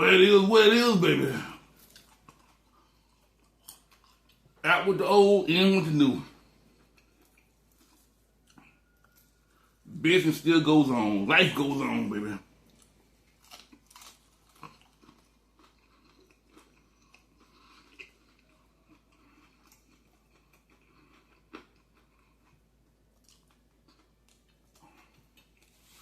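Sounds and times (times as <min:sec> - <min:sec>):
person chewing food: 0:01.3 - 0:04.6, 0:06.4 - 0:09.8, 0:12.6 - 0:26.0.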